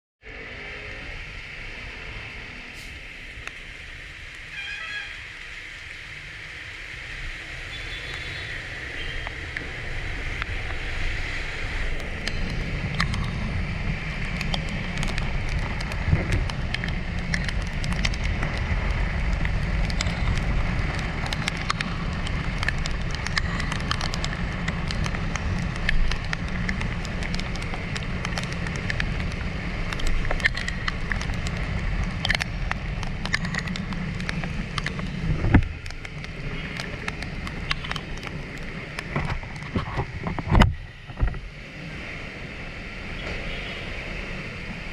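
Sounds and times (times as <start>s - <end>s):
scooter engine drone: 0.2s - 44.9s
wind: 0.2s - 44.9s
hiss from wet road: 0.3s - 44.9s
scattered ticks: 9.0s - 41.4s.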